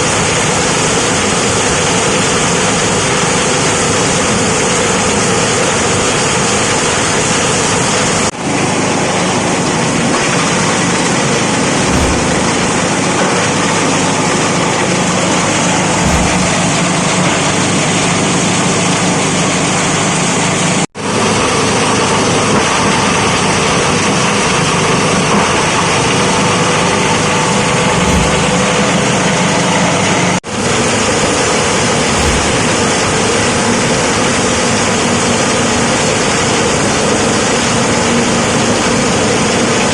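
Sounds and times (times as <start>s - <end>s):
shredder machine running: 11.8s - 13.0s, 32.0s - 33.1s.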